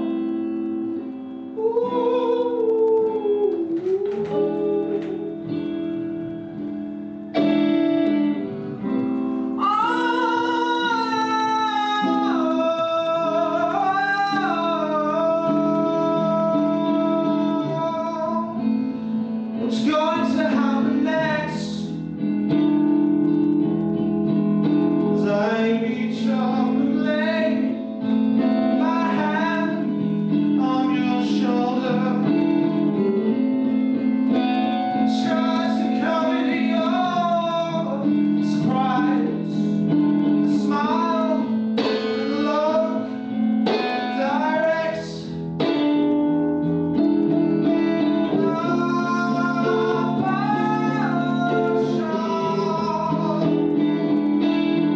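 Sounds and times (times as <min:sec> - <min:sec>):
acoustic guitar strumming: 0:00.0 - 0:54.9
woman singing: 0:01.6 - 0:06.2.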